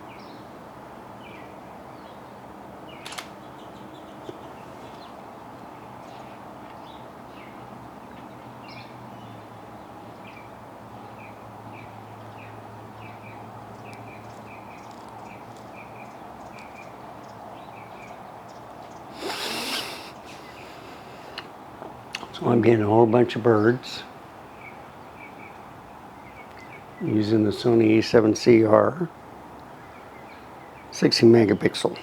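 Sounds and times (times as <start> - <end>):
steady background hiss: 0.0 - 32.0
small birds chirping: 1.2 - 28.9, 29.6 - 32.0
loud brief burst of noise: 19.2 - 20.1.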